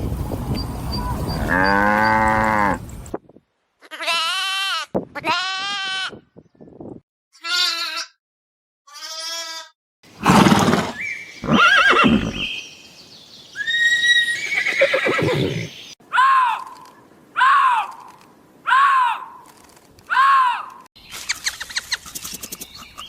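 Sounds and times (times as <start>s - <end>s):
cow mooing: 1.4s - 2.8s
sheep bleating: 3.8s - 6.2s, 7.4s - 8.2s, 8.9s - 9.8s.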